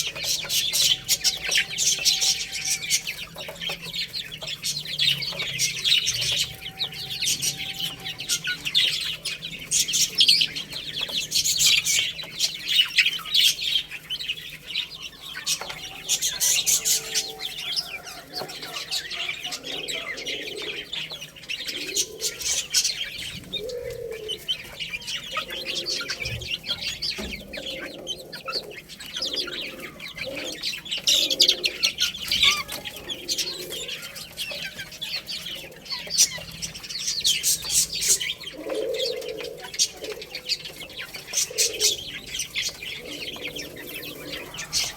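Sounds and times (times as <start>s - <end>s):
baby chicks peeping: 0.0s - 44.9s
low clucking calls: 14.9s - 44.9s.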